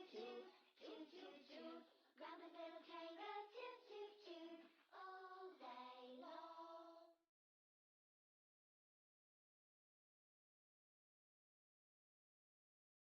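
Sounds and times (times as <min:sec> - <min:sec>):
child singing a song: 0:00.0 - 0:07.1.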